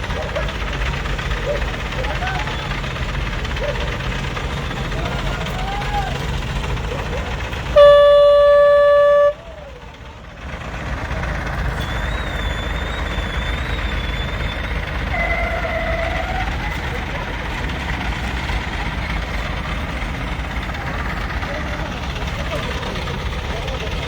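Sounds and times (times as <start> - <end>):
truck engine idling: 0.0 - 24.0
truck horn blast: 7.6 - 9.7, 15.0 - 16.5.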